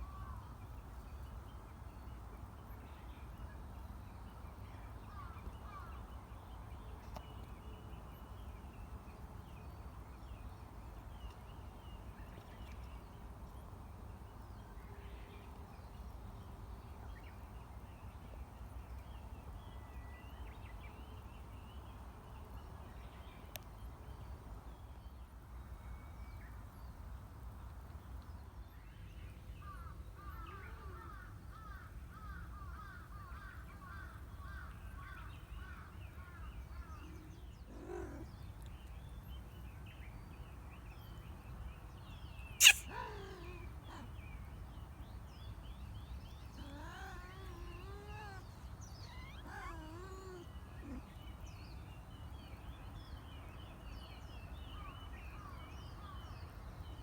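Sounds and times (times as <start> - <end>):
bird chirping: 42.4 - 44.1
wavering animal calls: 42.6 - 44.0, 46.6 - 51.0
kitten sneezing: 42.6 - 44.1.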